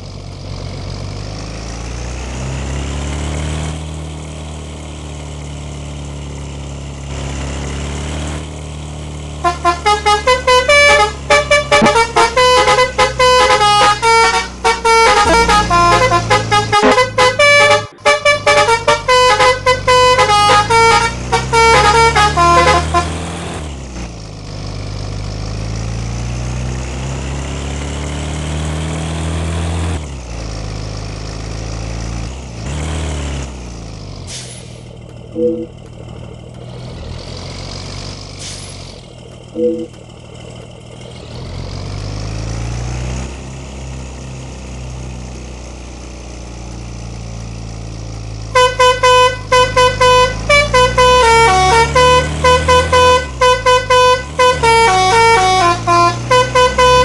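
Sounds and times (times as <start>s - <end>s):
bus engine running: 0.0s - 57.0s
bus horn playing a fast tune: 9.4s - 23.5s, 48.5s - 57.0s.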